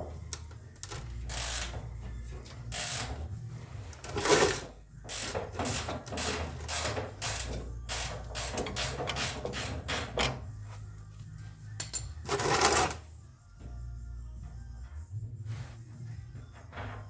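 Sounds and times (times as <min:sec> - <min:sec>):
ratchet wrench clicking: 0:00.3 - 0:01.8, 0:02.7 - 0:03.2, 0:04.2 - 0:10.2.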